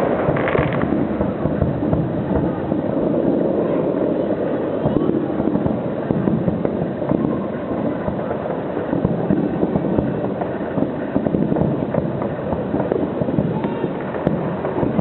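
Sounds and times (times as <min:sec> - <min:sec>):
fireworks bangs and crackles: 0:00.0 - 0:15.0
wind noise on microphone: 0:00.0 - 0:15.0.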